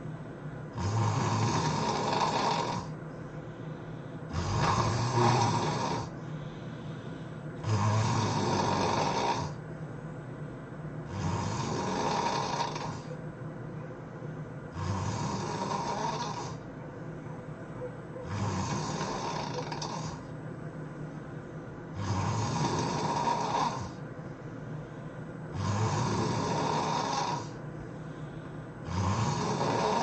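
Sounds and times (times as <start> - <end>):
person snoring: 0.7 - 2.9, 4.3 - 6.2, 7.6 - 9.6, 11.0 - 13.1, 14.7 - 16.6, 18.3 - 20.3, 21.9 - 24.0, 25.5 - 27.6, 28.8 - 30.0.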